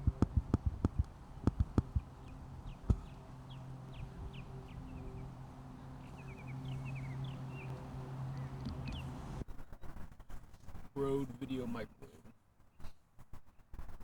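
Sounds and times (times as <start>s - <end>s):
steady low hum: 0.0s - 9.4s
small birds chirping: 0.0s - 9.6s.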